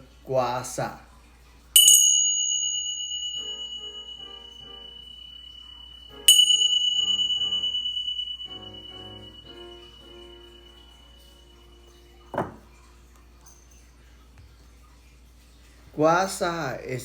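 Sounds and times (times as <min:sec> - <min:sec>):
soft background music: 0:00.0 - 0:16.8
bell ringing high clear tone: 0:01.8 - 0:13.8.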